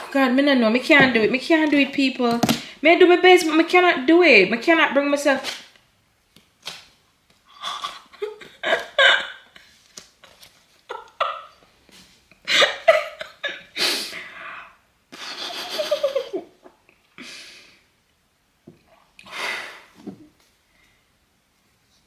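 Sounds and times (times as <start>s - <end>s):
woman laughing nervously: 7.6s - 9.6s, 10.9s - 11.6s, 12.4s - 13.7s, 15.2s - 16.7s.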